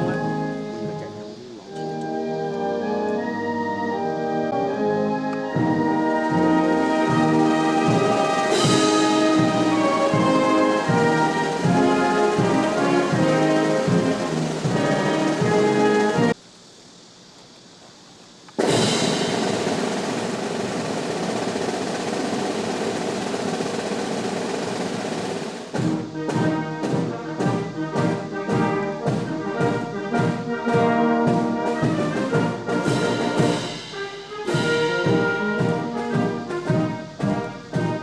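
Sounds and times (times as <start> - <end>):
brass band march: 0.0 - 16.4, 18.6 - 38.0
drum roll: 5.5 - 16.4, 18.6 - 38.0.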